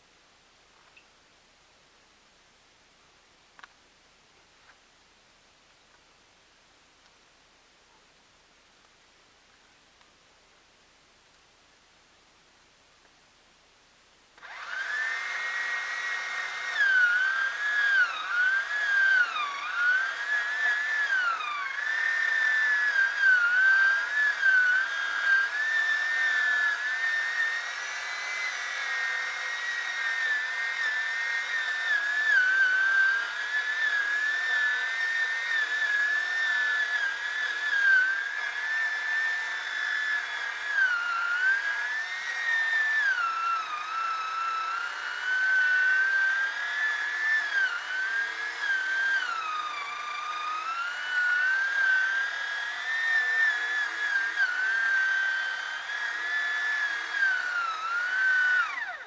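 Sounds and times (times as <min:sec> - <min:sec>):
chainsaw cutting at high revs: 0:14.4 - 0:59.0.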